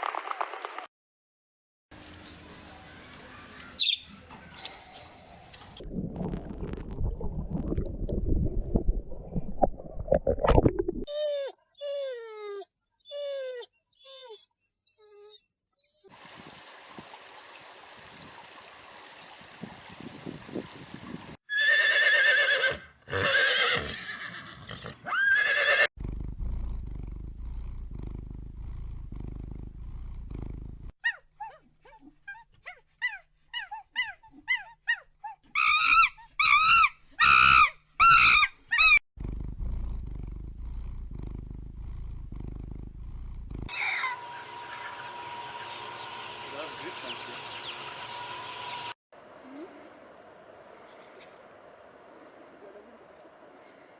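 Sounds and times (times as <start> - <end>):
loud animal calls: 43.7 - 48.9.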